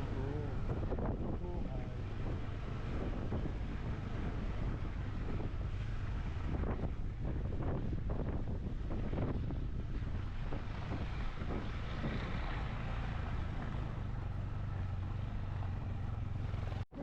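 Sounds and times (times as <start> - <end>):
wind buffeting microphone: 0.0 - 16.8
motorcycle engine running: 0.0 - 17.0.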